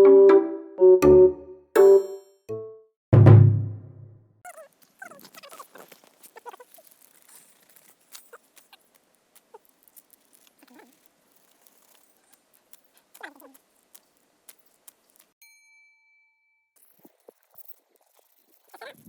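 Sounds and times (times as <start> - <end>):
campfire crackling: 4.7 - 15.4.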